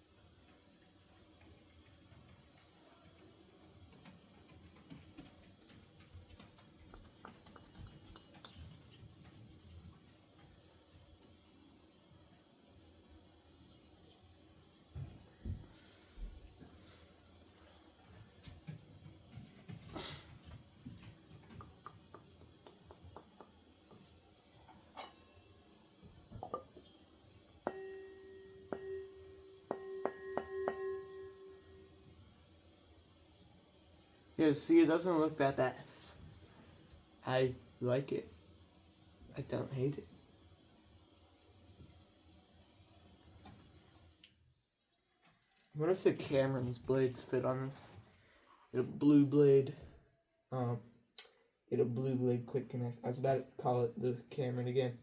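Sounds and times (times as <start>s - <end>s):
metal part ringing when struck: 25.0s - 25.6s, 27.7s - 31.8s
low hum: 25.0s - 34.4s.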